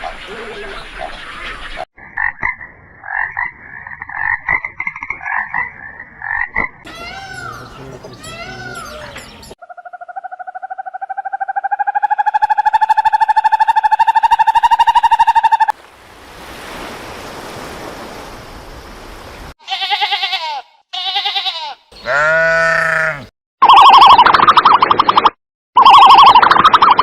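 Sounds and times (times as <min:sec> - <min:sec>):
short wavering animal calls: 0:09.6 - 0:15.7, 0:22.0 - 0:23.3.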